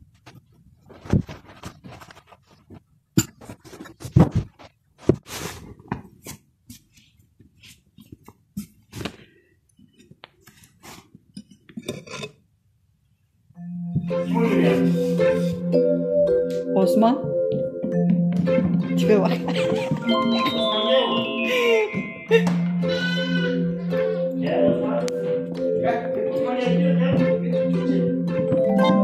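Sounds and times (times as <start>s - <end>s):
background music: 13.6s - 29.0s.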